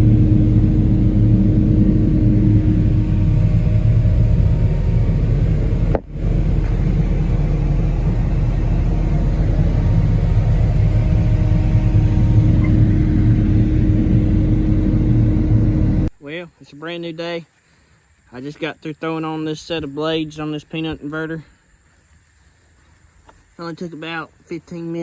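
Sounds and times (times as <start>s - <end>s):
farm machine engine running: 0.0s - 16.1s.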